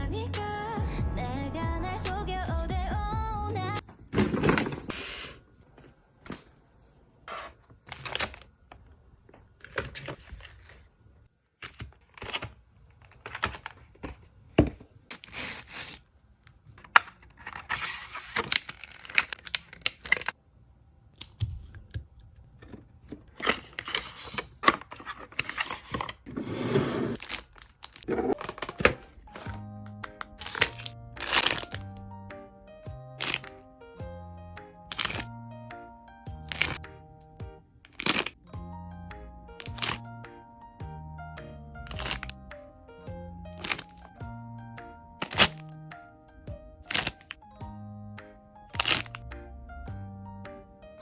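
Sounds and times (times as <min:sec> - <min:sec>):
packaging rustling and tearing: 0:16.8 - 0:20.4, 0:27.1 - 0:29.6, 0:30.2 - 0:32.0, 0:34.9 - 0:35.3, 0:37.9 - 0:38.4, 0:41.9 - 0:42.4, 0:43.6 - 0:44.1, 0:46.8 - 0:47.4, 0:48.8 - 0:49.2.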